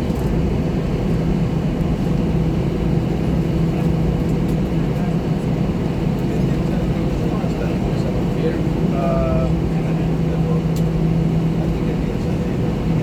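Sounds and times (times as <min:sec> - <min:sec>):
airliner cabin drone: 0:00.0 - 0:13.0.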